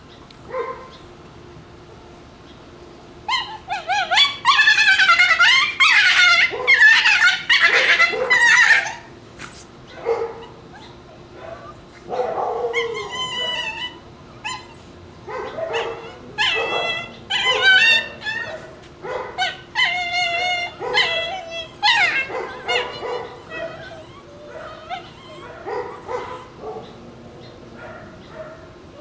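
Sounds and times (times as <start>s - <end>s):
puppies screaming and yipping: 3.2s - 29.0s.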